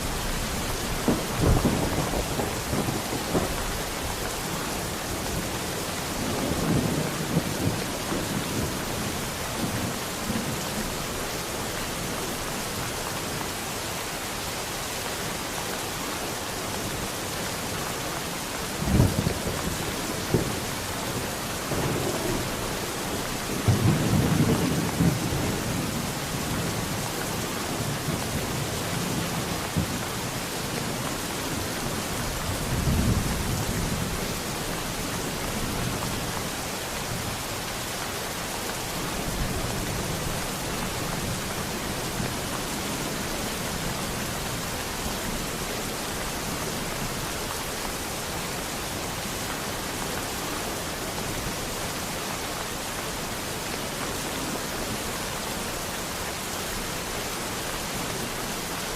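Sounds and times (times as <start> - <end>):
thunder rumbling: 0.3 - 4.0.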